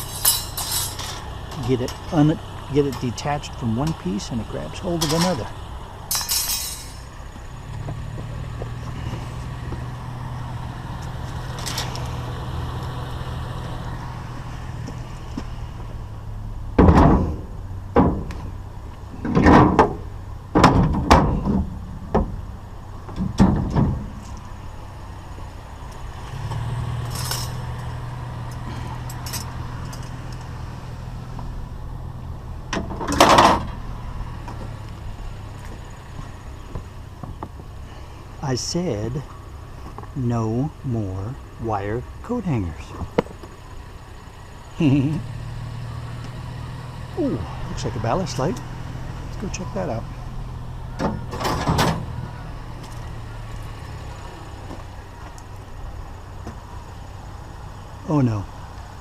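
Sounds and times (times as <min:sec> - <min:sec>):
scrap metal clanking and rattling: 0:00.0 - 0:07.2, 0:11.2 - 0:12.2, 0:19.2 - 0:22.4, 0:23.1 - 0:24.5, 0:26.4 - 0:30.5, 0:32.7 - 0:33.8, 0:51.0 - 0:52.2
truck engine idling: 0:00.0 - 0:59.0.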